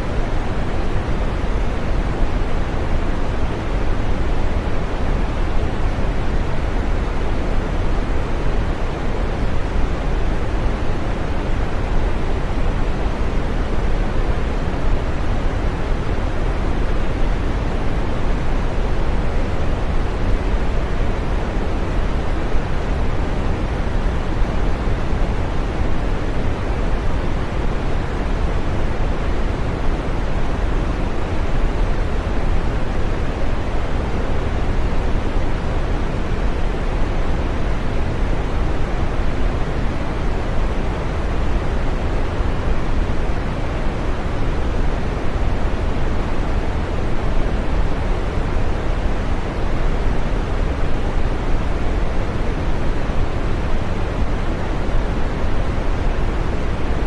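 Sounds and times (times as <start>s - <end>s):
green noise hiss: 0.0s - 57.0s.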